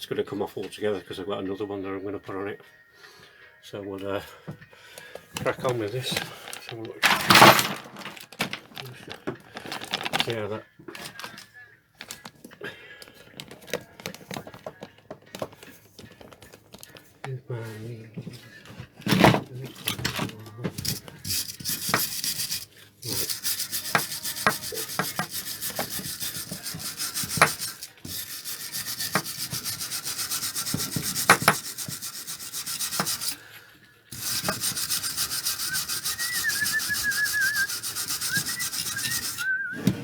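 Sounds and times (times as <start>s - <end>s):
wire brush scrubbing metal: 20.8s - 33.4s, 34.1s - 39.8s
person whistling a tune: 35.3s - 40.0s.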